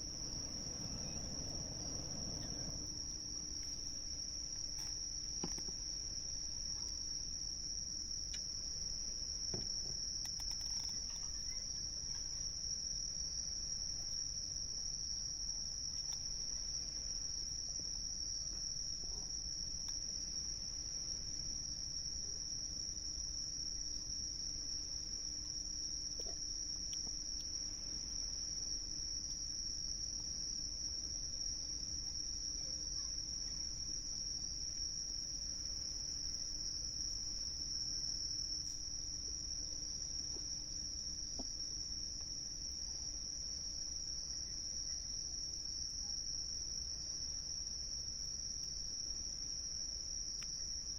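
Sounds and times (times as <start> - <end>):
insects trilling: 0.0 - 6.1, 20.0 - 46.9
low background hiss: 0.0 - 50.9.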